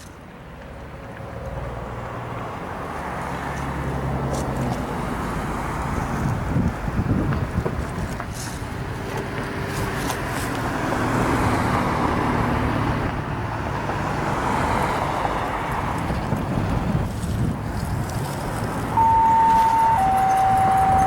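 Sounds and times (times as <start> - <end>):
tyre hiss and engine hum: 0.0 - 21.0
cars driving past: 0.3 - 21.0.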